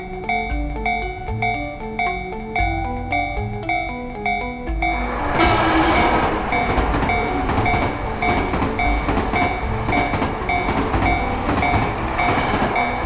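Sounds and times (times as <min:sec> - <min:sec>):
bell-like tone: 0:04.8 - 0:13.0
bullet train rushing past: 0:04.9 - 0:13.0.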